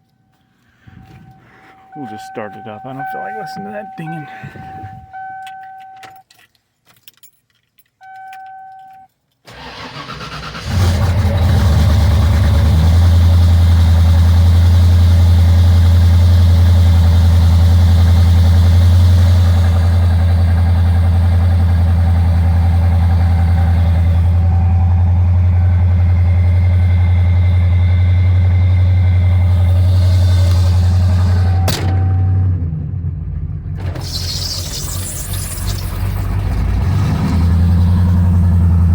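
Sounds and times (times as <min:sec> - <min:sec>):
car warning chime ding: 0:01.1 - 0:06.3, 0:08.0 - 0:09.1
starter motor cranking: 0:09.5 - 0:12.4
engine idling: 0:09.5 - 0:38.9.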